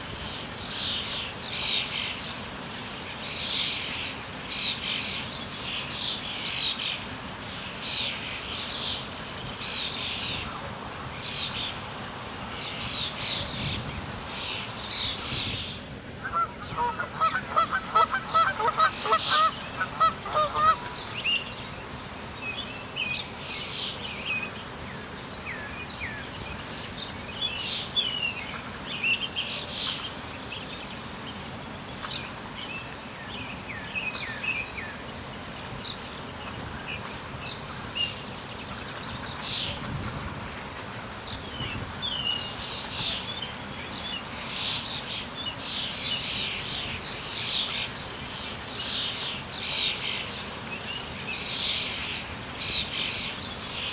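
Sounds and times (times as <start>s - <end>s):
background hiss: 0.0s - 53.9s
birds chirping: 12.7s - 21.9s.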